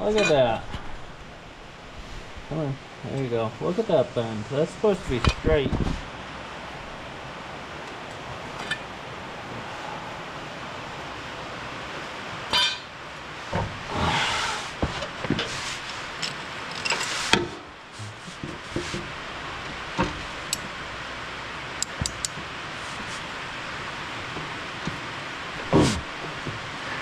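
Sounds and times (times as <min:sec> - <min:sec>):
steady background hiss: 0:00.0 - 0:27.0
metal tools clinking and scraping: 0:12.5 - 0:12.9, 0:15.0 - 0:18.4.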